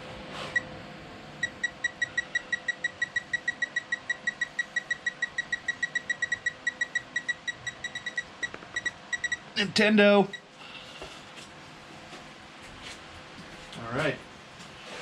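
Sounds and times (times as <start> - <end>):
rapid high electronic beeps: 1.4 - 9.5.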